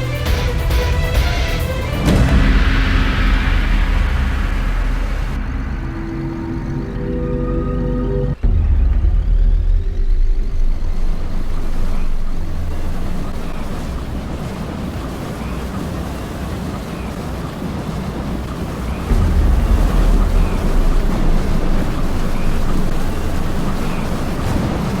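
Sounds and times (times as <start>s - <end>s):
strong wind buffeting microphone: 8.4s - 25.0s.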